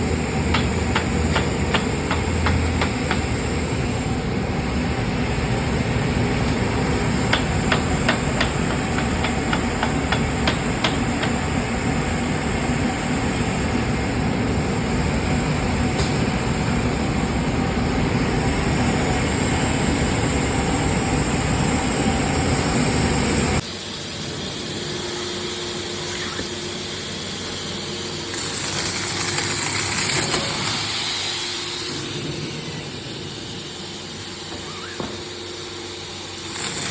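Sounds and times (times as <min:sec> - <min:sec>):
wood cutting machine: 0:25.4 - 0:36.9.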